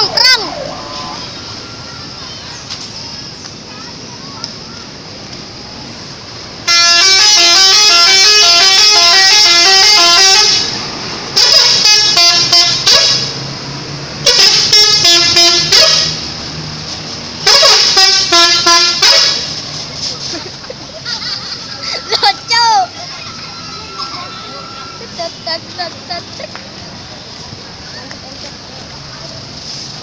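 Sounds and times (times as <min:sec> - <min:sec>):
bus air horn playing a tune: 0:06.6 - 0:13.4, 0:14.2 - 0:16.3, 0:17.4 - 0:19.6, 0:22.0 - 0:25.2.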